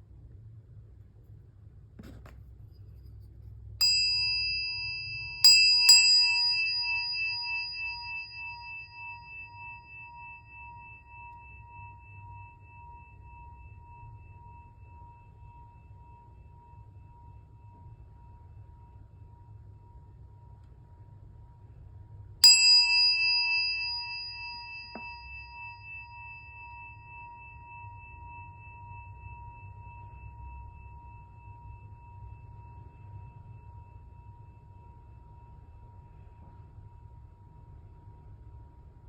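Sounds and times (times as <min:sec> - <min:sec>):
meditation bell ringing: 0:03.8 - 0:17.6, 0:22.4 - 0:35.8.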